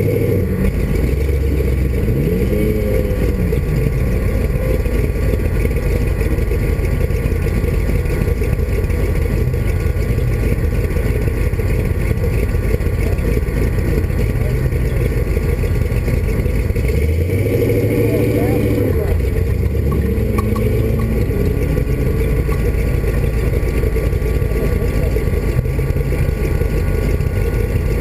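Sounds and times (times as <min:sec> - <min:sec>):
race vehicle engine droning: 0:00.0 - 0:28.0.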